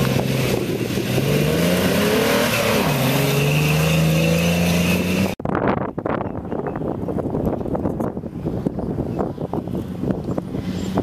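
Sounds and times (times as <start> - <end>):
race vehicle engine revving: 0.0 - 5.4
wind noise on microphone: 4.9 - 11.0.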